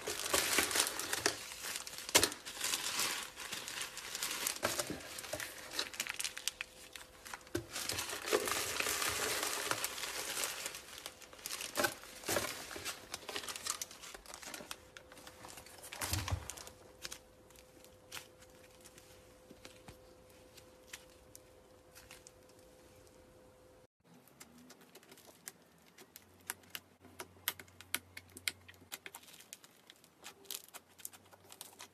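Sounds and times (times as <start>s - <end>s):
slime crinkling and popping: 0.0s - 15.2s, 24.2s - 31.9s.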